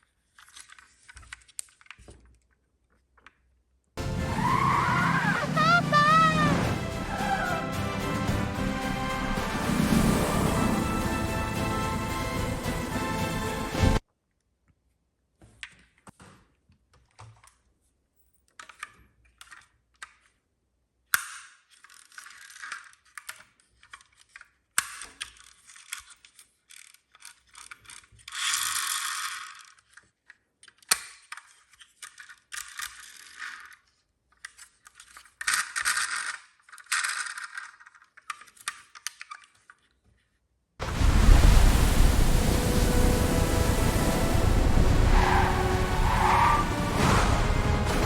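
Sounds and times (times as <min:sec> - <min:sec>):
toy vehicles clicking and rattling: 0:00.0 - 0:03.6, 0:16.9 - 0:40.5
toy vehicles clacking: 0:18.5 - 0:20.5, 0:21.1 - 0:40.0
little wheels rolling: 0:25.4 - 0:30.1, 0:31.4 - 0:39.9.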